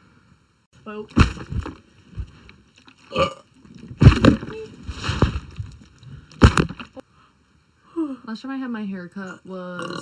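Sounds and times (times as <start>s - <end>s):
person burping: 3.1s - 3.5s, 9.8s - 10.0s.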